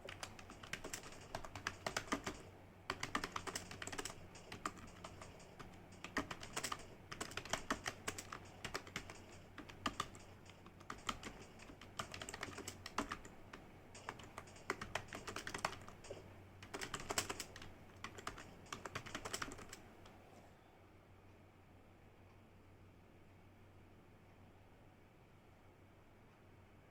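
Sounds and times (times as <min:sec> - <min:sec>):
typing on computer keyboard: 0:00.0 - 0:20.2.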